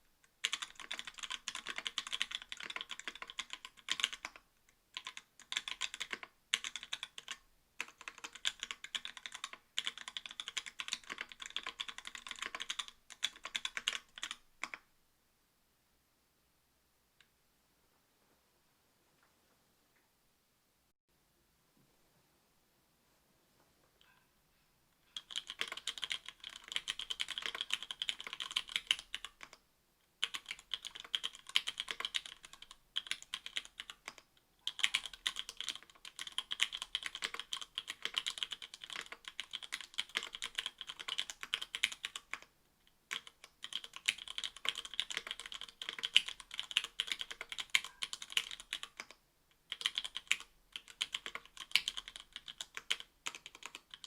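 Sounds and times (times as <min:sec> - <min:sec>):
typing on mechanical keyboard: 0:00.4 - 0:14.8, 0:25.1 - 0:29.6, 0:30.2 - 0:42.5, 0:43.1 - 0:54.0.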